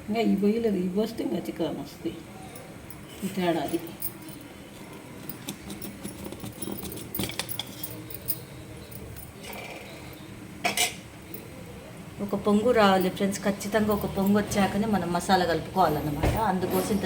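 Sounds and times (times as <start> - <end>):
light metallic clinks and jingles: 2.6 - 9.4.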